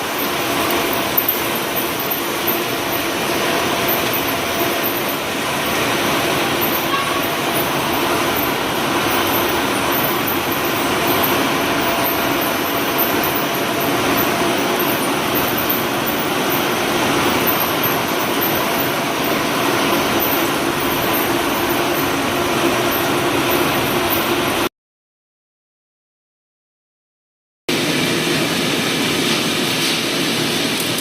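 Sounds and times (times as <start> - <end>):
machinery running with hum: 0.0 - 24.7.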